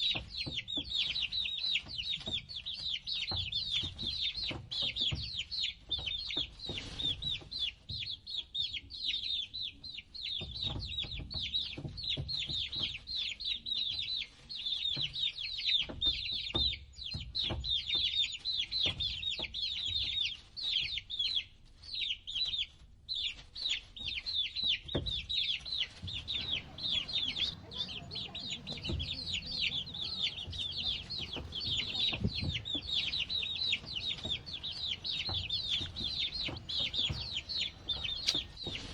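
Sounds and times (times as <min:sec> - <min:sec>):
baby chicks peeping: 0:26.0 - 0:38.8
soft knocks: 0:26.1 - 0:38.6.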